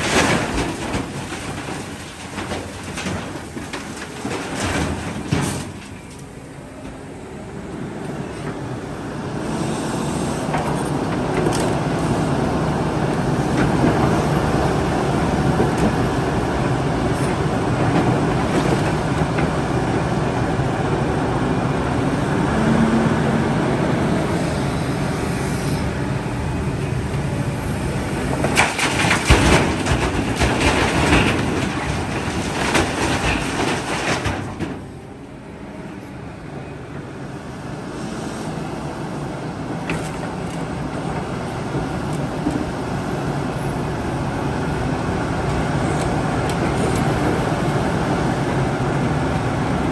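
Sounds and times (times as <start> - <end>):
excavator diesel engine running: 0.0 - 49.9
loud clattering bangs: 28.2 - 34.9.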